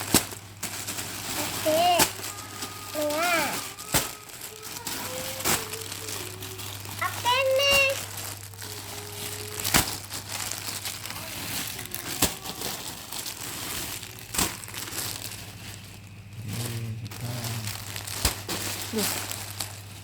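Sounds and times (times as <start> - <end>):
sharp packaging snaps: 0.0 - 19.9
packaging crinkling: 0.0 - 20.0.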